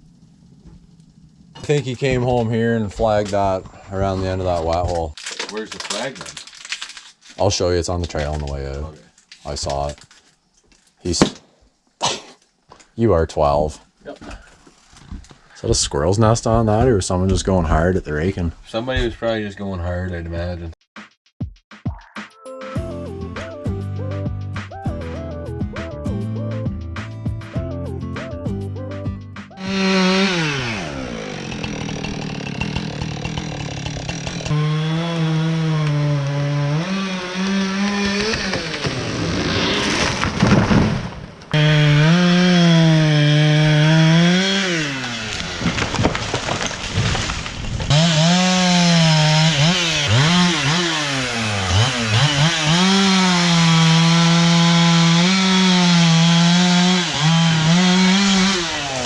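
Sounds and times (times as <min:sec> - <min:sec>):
harvester machine sawing: 0:29.6 - 0:59.0.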